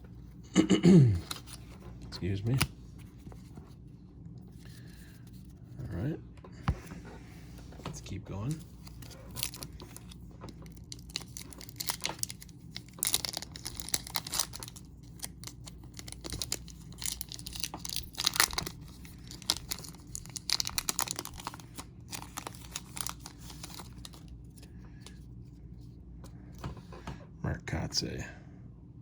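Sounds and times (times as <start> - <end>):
wrapper tearing and crinkling: 8.5 - 24.7.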